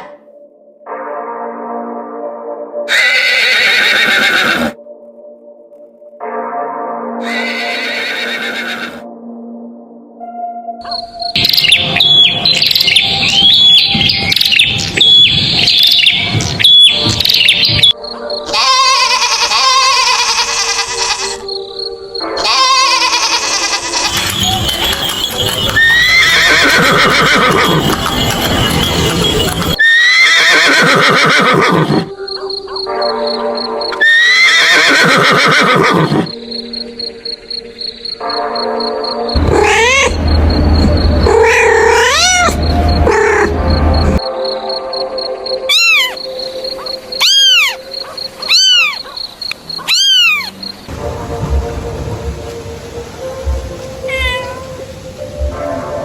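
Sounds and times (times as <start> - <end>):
horse whinnying: 2.9 - 4.8, 7.2 - 9.0, 22.4 - 32.1, 34.0 - 36.3, 39.4 - 40.2, 41.2 - 43.5, 45.7 - 46.2, 47.2 - 47.8, 48.5 - 49.0, 49.8 - 50.6
cat meowing: 39.4 - 40.2, 41.2 - 43.5, 45.7 - 46.2, 47.2 - 47.8, 48.4 - 49.1, 49.8 - 50.6, 54.1 - 54.7.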